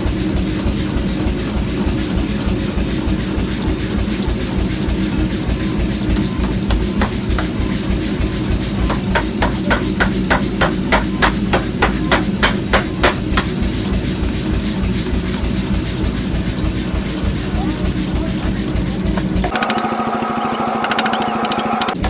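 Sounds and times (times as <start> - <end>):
low machine hum: 0.0 - 22.0
hammer blows on iron: 8.8 - 13.6.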